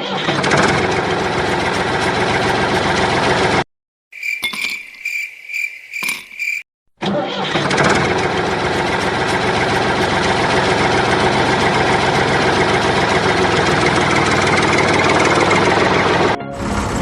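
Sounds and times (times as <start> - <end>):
engine idling at low speed: 8.0 - 16.9.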